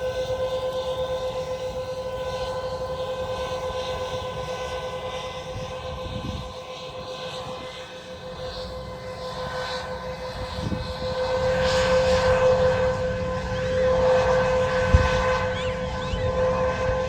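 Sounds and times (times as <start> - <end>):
wind buffeting microphone: 5.5 - 6.6, 10.4 - 17.0.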